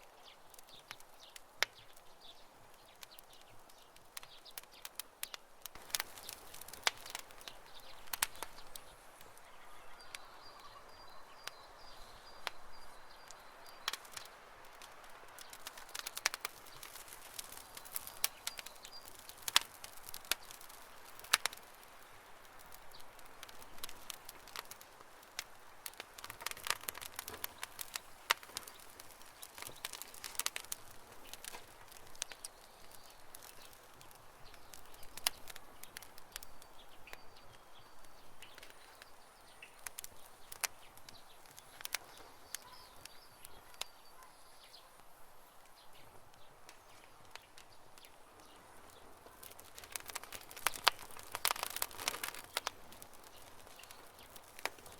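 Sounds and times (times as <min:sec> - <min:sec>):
wood fire crackling and popping: 0:00.0 - 0:54.9
faint bird chirps: 0:07.4 - 0:14.4, 0:34.4 - 0:52.7.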